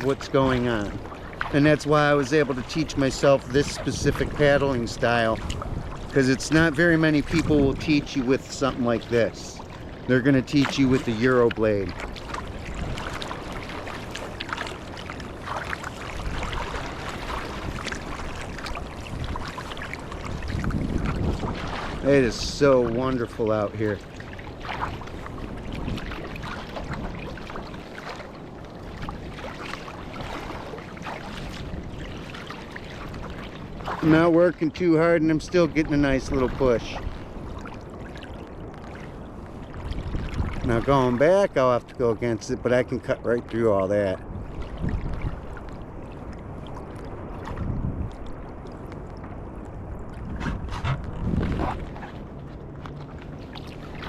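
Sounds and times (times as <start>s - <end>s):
water lapping against kayak: 0.0s - 54.0s
wind rumble on microphone: 0.0s - 54.0s.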